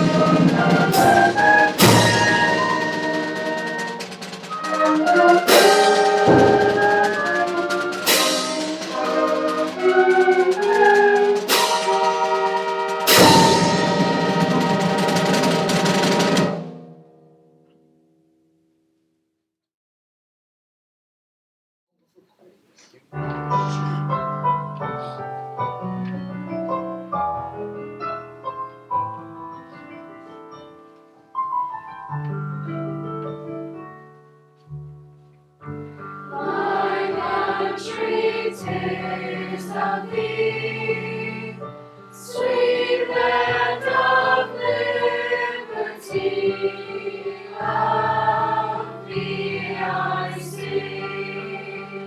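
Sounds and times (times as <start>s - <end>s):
instrumental music with brass and drums: 0.0s - 17.0s.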